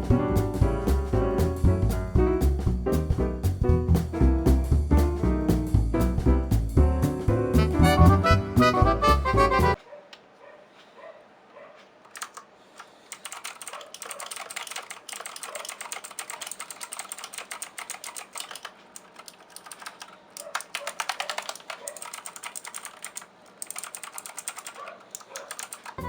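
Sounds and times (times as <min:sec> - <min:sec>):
mechanical keyboard typing: 0:12.1 - 0:26.0.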